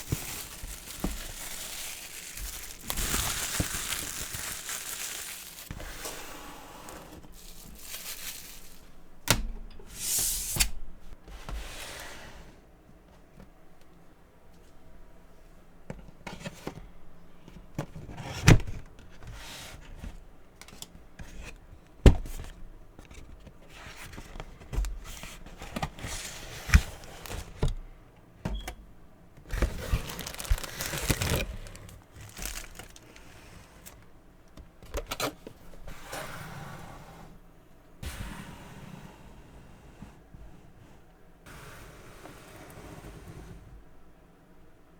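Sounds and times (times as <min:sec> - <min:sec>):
packaging crinkling and tearing: 0:00.0 - 0:05.8, 0:07.3 - 0:09.0, 0:29.5 - 0:34.0.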